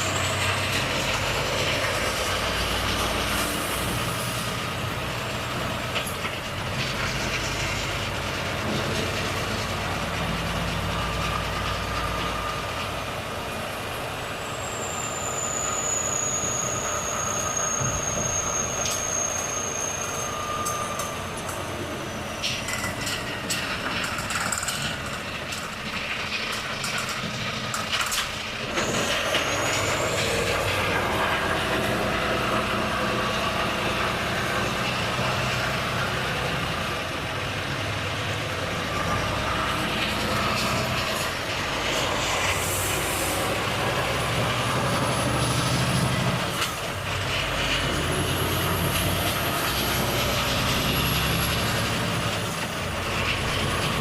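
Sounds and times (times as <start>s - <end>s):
truck diesel engine: 0.0s - 54.0s
high thin whistle: 14.4s - 22.9s.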